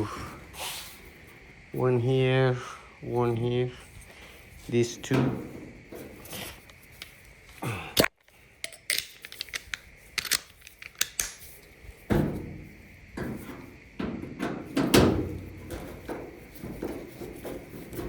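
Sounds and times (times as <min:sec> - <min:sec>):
metal parts clicking and rattling: 0:08.6 - 0:11.7.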